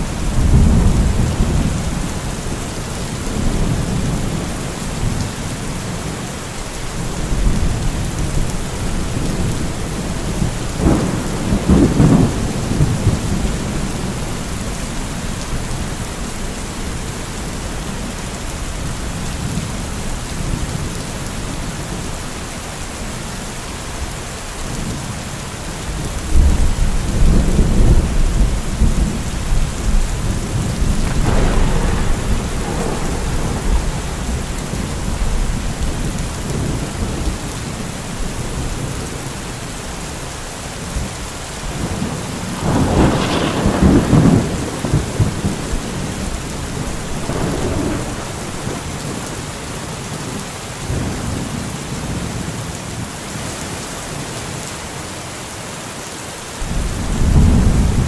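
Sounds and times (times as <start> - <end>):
rolling thunder: 0.0 - 2.5, 7.0 - 14.8, 26.3 - 39.2, 41.0 - 49.6, 56.6 - 58.0
steady rainfall: 0.0 - 58.0.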